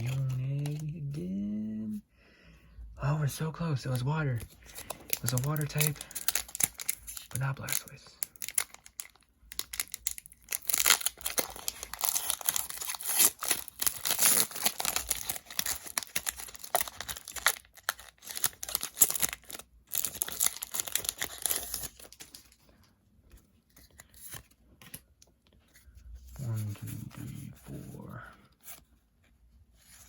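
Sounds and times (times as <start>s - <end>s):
foil wrapper crinkling and tearing: 0.0s - 1.0s, 4.6s - 22.6s.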